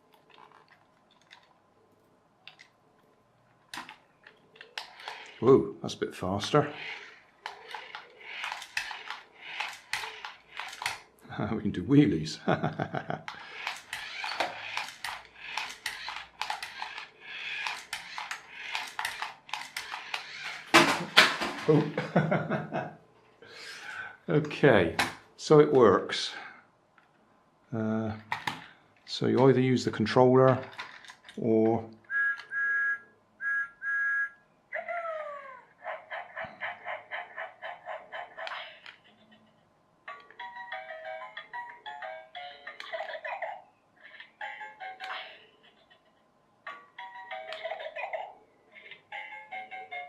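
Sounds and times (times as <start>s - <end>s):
toy train motor whirring: 0.0s - 1.5s, 3.7s - 11.2s, 13.3s - 21.7s, 30.5s - 31.5s
plastic clicks and clatter: 0.0s - 1.7s, 2.4s - 5.4s, 6.5s - 11.2s, 13.3s - 21.8s, 28.2s - 29.6s, 30.4s - 31.8s.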